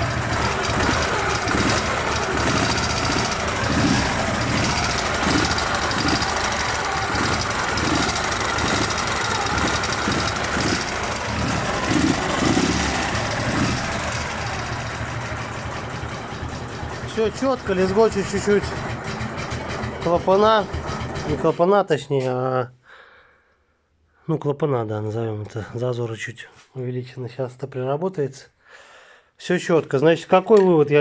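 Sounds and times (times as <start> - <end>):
motorcycle engine idling: 0.0 - 21.6.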